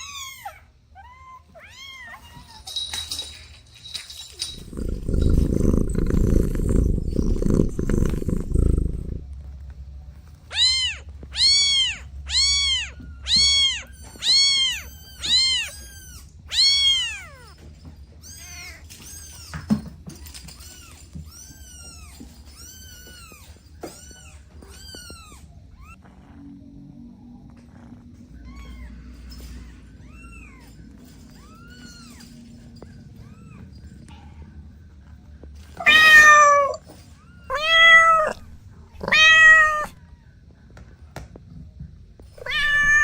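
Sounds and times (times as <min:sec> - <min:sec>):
kitten meowing: 0:35.8 - 0:36.8, 0:37.5 - 0:40.0, 0:42.4 - 0:43.0.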